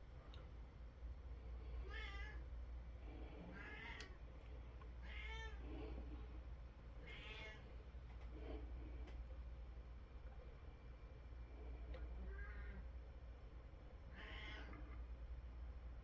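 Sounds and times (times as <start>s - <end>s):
cat meowing: 5.0s - 5.6s, 7.0s - 7.6s, 14.1s - 14.8s.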